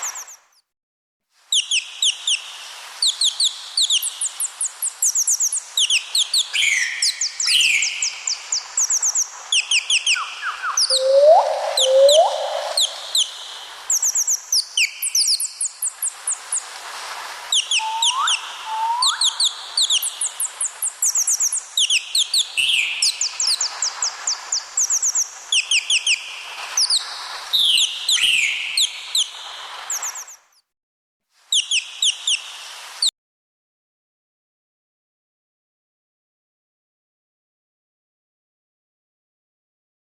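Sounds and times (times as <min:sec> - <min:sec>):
birds chirping and twittering: 0:00.0 - 0:00.6, 0:03.0 - 0:16.7, 0:17.5 - 0:30.4.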